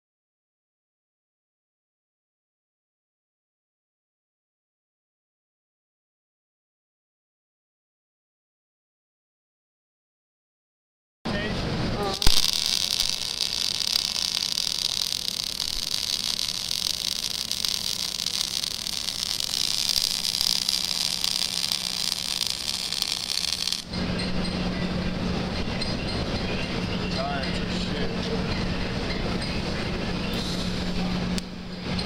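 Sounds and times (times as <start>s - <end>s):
steady low hum: 11.3s - 32.0s
welding arc sizzling: 12.0s - 24.0s.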